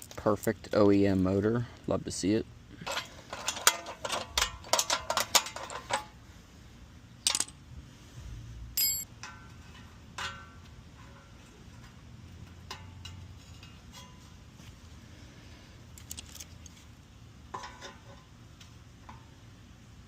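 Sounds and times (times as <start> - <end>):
short ringing metal clink: 8.8 - 9.1
light metallic clicks and clinks: 8.8 - 9.4.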